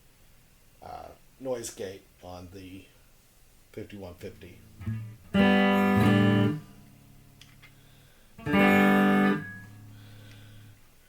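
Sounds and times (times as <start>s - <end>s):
distorted electric guitar chords: 4.6s - 7.8s, 8.4s - 10.7s
low guitar note ringing: 4.8s - 7.2s, 8.4s - 10.7s.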